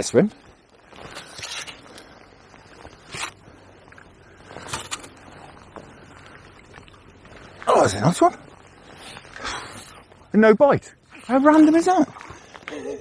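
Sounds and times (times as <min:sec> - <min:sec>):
rustling handling noises: 0:00.0 - 0:10.4.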